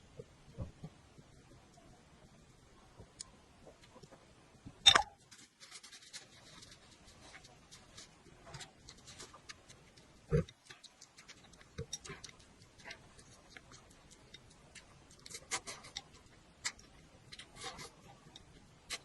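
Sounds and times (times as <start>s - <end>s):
wet mouth chewing sounds: 8.5s - 19.0s.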